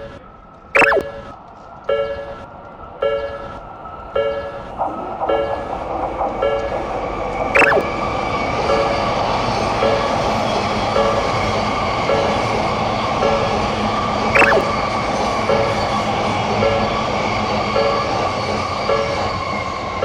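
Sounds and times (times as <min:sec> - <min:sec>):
passing train running: 0:00.0 - 0:20.0
railroad crossing bell ringing: 0:01.9 - 0:05.8, 0:08.6 - 0:20.0
falling whistle-like glide: 0:07.5 - 0:08.9, 0:14.3 - 0:15.0.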